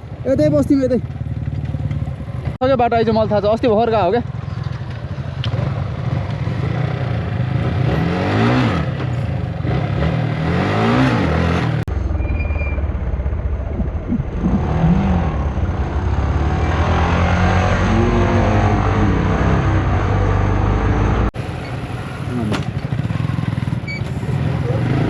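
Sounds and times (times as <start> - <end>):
motorcycle engine revving: 0.0 - 25.0
wind noise on microphone: 13.6 - 15.5.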